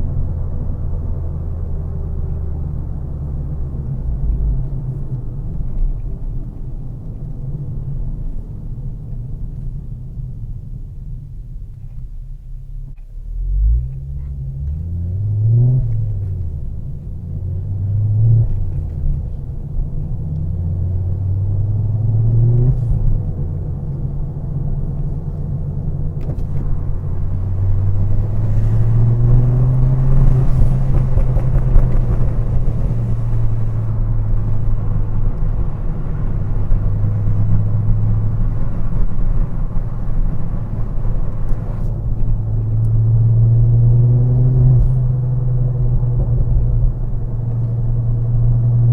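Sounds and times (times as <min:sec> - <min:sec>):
road noise: 0:00.0 - 0:48.9
car engine revving: 0:13.0 - 0:48.9.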